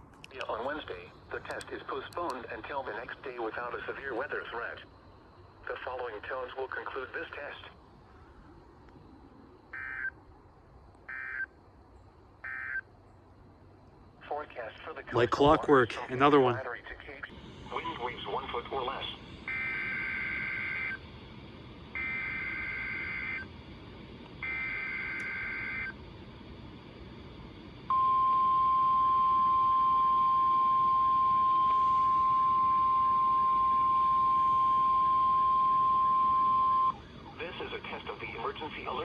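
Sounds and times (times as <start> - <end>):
faint radio hiss: 0.0 - 39.0
steady warning alarm tone: 17.6 - 26.6, 27.8 - 37.7.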